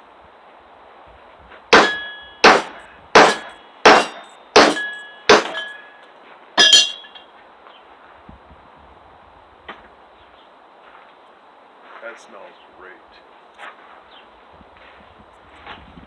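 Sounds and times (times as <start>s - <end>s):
hammer striking hatchet metal clangs: 1.7s - 6.0s, 6.6s - 7.3s.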